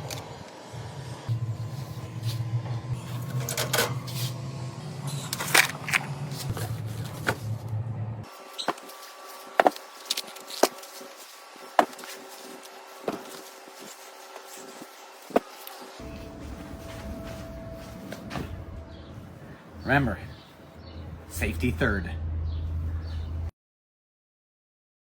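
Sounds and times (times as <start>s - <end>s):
low steady hum: 0.0s - 8.4s, 15.6s - 21.5s.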